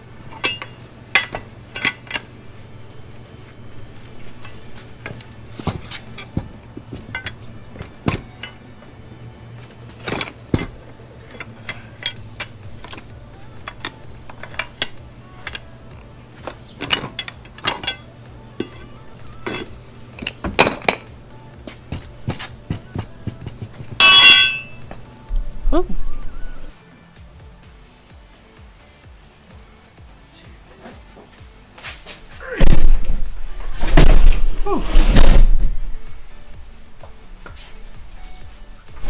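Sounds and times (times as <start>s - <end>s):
steady low hum: 0.0s - 39.0s
metal tools clinking and clanking: 0.2s - 26.7s.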